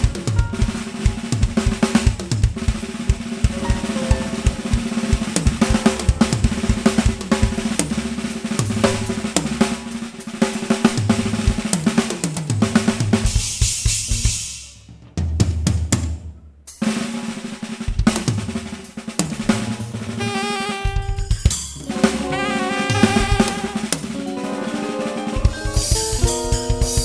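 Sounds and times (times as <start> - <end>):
band music: 0.0 - 2.4, 3.2 - 10.1, 20.2 - 27.0
busy drum kit: 0.0 - 27.0
cymbal crash: 3.5 - 9.1.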